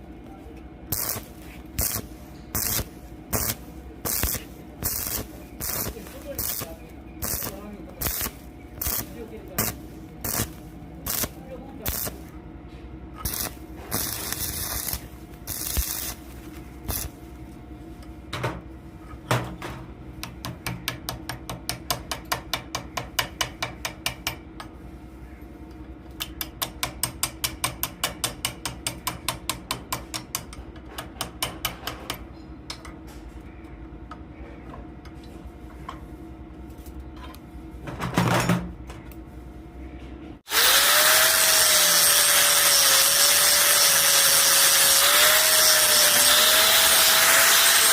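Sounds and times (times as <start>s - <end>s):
power tool whining: 40.5s - 47.9s.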